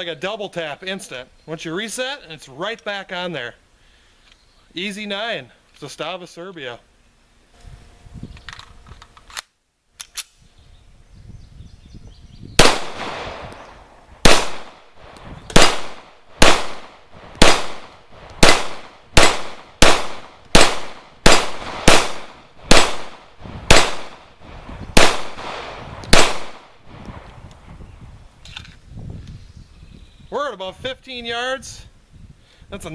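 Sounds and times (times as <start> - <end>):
pistol shots: 12.6 - 24.4, 25.0 - 26.8.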